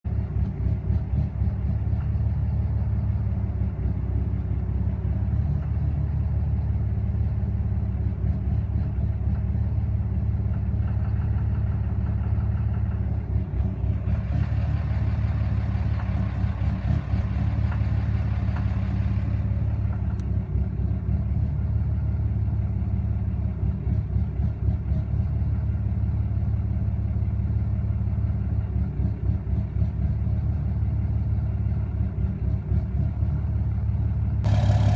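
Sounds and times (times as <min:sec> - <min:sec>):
diesel engine idling rough: 0:00.0 - 0:34.9
engine knocking: 0:00.1 - 0:34.9.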